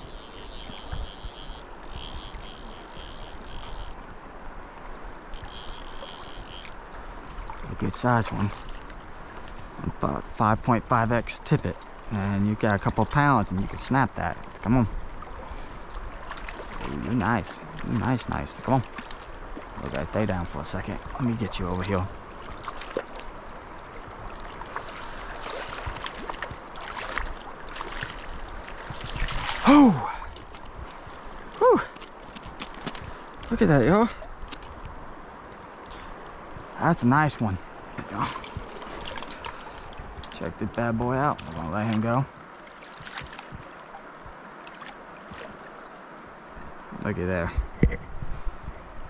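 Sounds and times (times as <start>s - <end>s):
insect chirping: 0.0s - 4.1s, 5.0s - 7.6s
small splashes and ticks: 0.0s - 10.4s, 11.2s - 36.8s, 38.0s - 46.4s
river water rushing: 11.7s - 47.0s.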